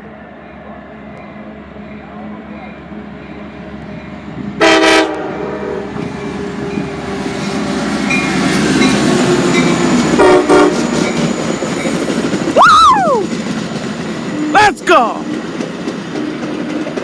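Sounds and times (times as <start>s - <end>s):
train air horn blasts: 4.6s - 5.8s, 10.2s - 10.8s
train rumble: 15.1s - 17.0s.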